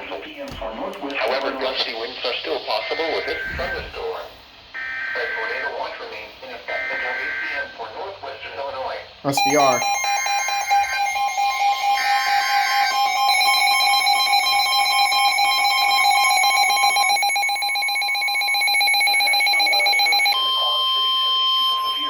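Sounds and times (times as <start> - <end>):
steady high alert tone: 2.8 - 4.1, 9.3 - 22.0
two-tone attention signal: 3.0 - 4.0, 9.4 - 22.0
warbling data burst: 9.4 - 22.0.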